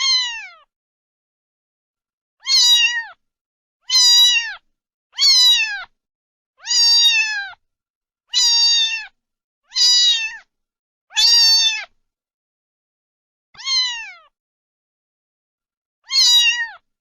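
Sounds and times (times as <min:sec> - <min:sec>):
cat meowing: 0:00.0 - 0:00.7, 0:02.4 - 0:03.2, 0:03.8 - 0:04.6, 0:05.2 - 0:05.9, 0:06.6 - 0:07.6, 0:08.3 - 0:10.5, 0:11.1 - 0:12.0, 0:13.6 - 0:14.4, 0:16.0 - 0:16.8.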